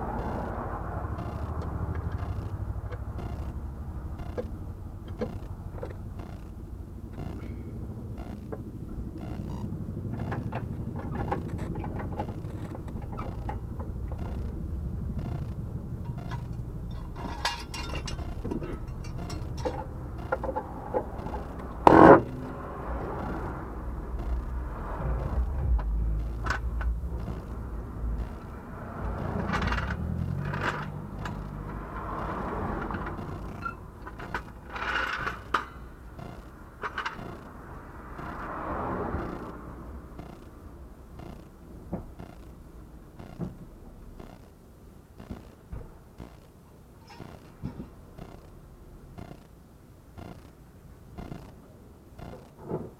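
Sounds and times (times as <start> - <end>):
car driving low rumble: 0.0 - 52.9
suspension knocks and clunks: 1.1 - 38.6.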